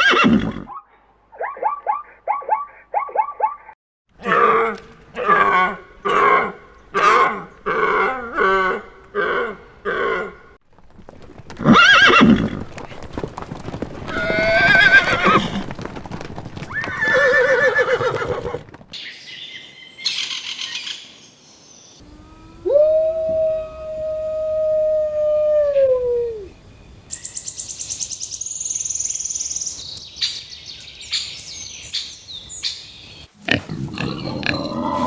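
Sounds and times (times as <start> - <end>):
horse whinnying: 0.0 - 0.8, 11.6 - 12.6, 14.1 - 15.7, 16.7 - 18.6, 34.0 - 35.0.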